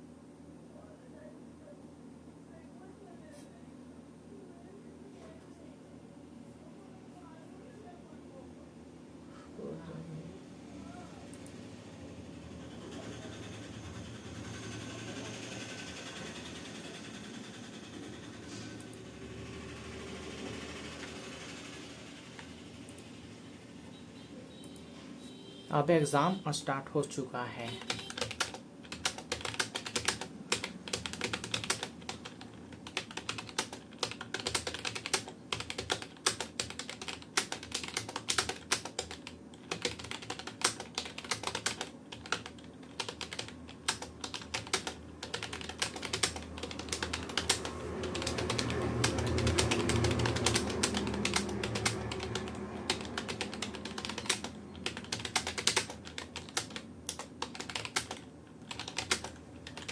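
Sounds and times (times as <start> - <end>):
keyboard typing clicks: 27.7 - 59.9.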